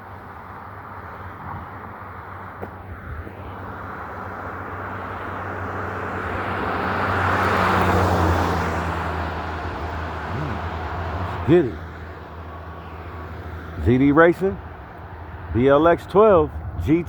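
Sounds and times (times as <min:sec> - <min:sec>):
car passing by: 0:00.8 - 0:13.8.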